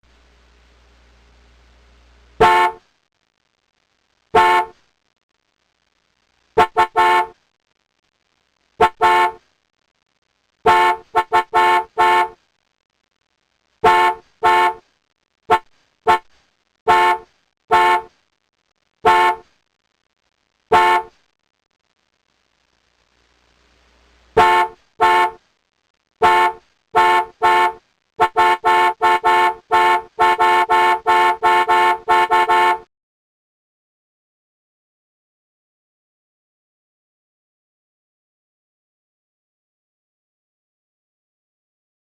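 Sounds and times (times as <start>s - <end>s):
car horn honking: 2.4s - 2.8s, 4.4s - 4.7s, 6.6s - 7.3s, 8.8s - 9.4s, 10.7s - 12.4s, 13.8s - 14.8s, 15.5s - 16.3s, 16.9s - 18.1s, 19.0s - 19.4s, 20.7s - 21.1s, 24.4s - 25.4s, 26.2s - 32.9s.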